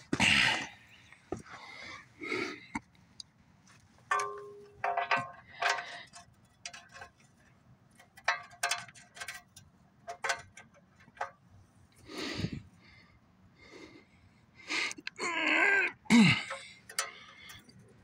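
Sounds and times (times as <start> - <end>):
metal objects clinking: 4.1 - 11.3.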